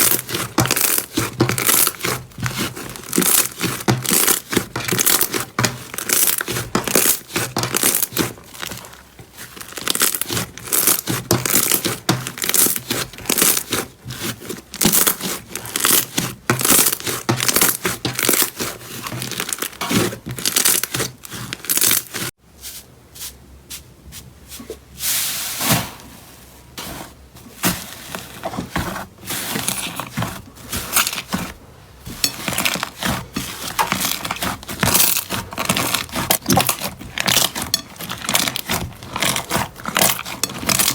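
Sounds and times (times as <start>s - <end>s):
slime crackling and popping: 0.0s - 13.8s, 14.8s - 18.6s, 33.7s - 40.9s.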